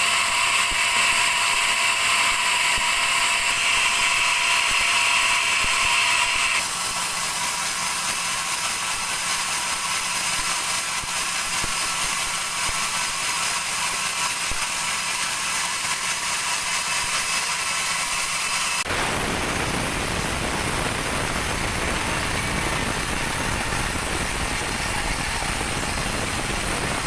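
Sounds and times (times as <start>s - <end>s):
high-pitched whine: 0.0s - 6.6s, 18.0s - 27.0s
bandsaw sawing wood: 0.0s - 19.0s, 19.8s - 27.0s.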